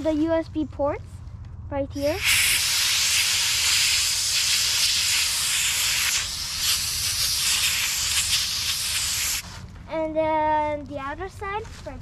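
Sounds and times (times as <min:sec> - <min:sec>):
compressed air hissing: 0:02.0 - 0:09.6.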